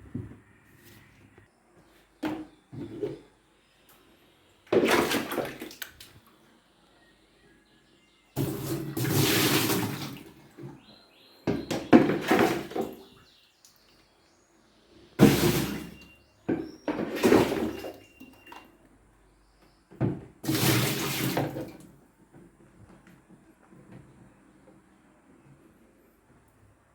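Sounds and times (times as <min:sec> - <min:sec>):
water gushing and splashing: 0:08.4 - 0:10.3, 0:15.2 - 0:15.9, 0:20.4 - 0:21.8.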